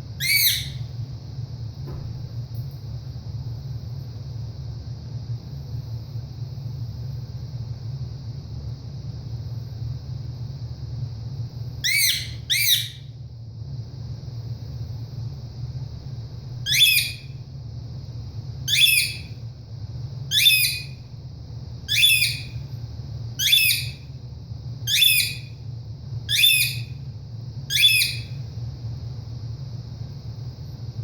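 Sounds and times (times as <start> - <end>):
parrot squawking: 0.2 - 0.8, 11.9 - 13.0, 16.7 - 17.3, 18.7 - 19.3, 20.3 - 21.0, 21.9 - 22.6, 23.4 - 24.0, 24.9 - 25.5, 26.3 - 26.9, 27.7 - 28.4.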